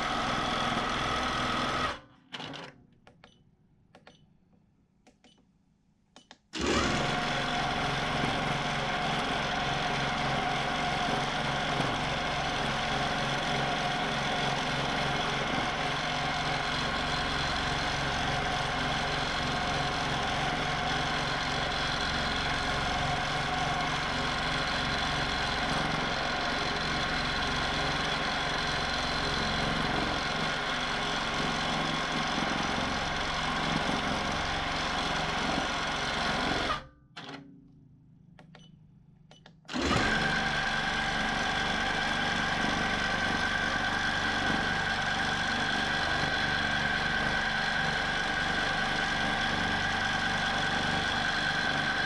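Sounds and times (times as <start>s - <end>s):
quilting machine stitching: 0.0s - 3.3s, 6.2s - 37.4s, 39.6s - 52.0s.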